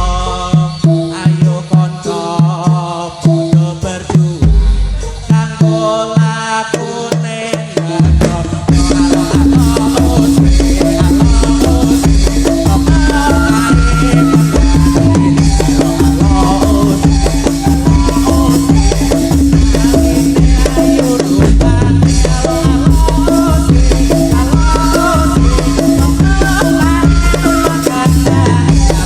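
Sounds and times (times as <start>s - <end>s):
driving drumming: 0.0s - 29.0s
wavering melody line: 8.9s - 29.0s.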